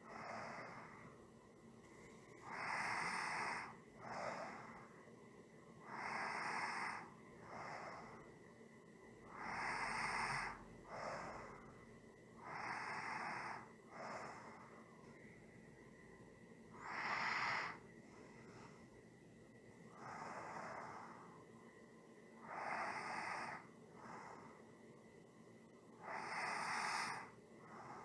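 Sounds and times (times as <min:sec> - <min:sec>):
person breathing slowly: 0:00.0 - 0:01.2, 0:01.8 - 0:05.1, 0:05.8 - 0:08.4, 0:09.2 - 0:11.8, 0:12.4 - 0:15.5, 0:16.7 - 0:19.1, 0:19.8 - 0:21.5, 0:22.4 - 0:24.8, 0:26.0 - 0:28.0.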